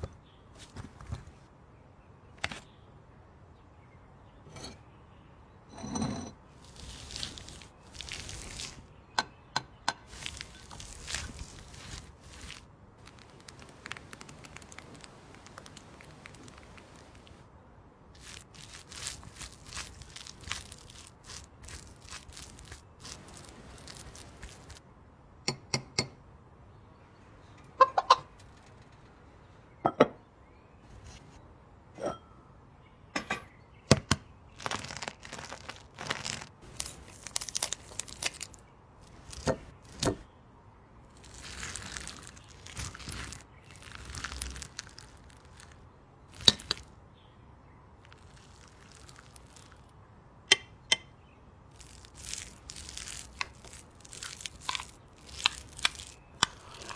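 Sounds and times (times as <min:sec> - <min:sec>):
rustling and scraping: 0:00.0 - 0:01.5, 0:05.8 - 0:09.0, 0:10.0 - 0:17.4, 0:18.2 - 0:24.8, 0:30.9 - 0:31.4, 0:34.6 - 0:40.3, 0:41.1 - 0:46.9, 0:48.0 - 0:49.9, 0:51.7 - 0:56.9.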